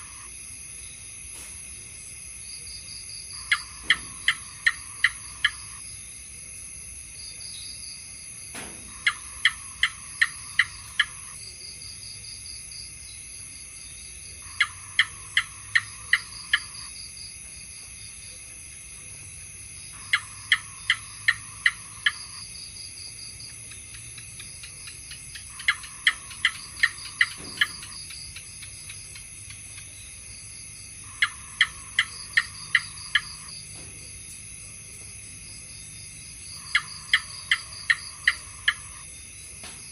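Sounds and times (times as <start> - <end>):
high insect-like drone: 0.0 - 6.2
gecko chirping: 3.3 - 5.8, 8.9 - 11.4, 14.4 - 16.9, 19.9 - 22.5, 23.7 - 30.2, 31.0 - 33.6, 36.4 - 39.1.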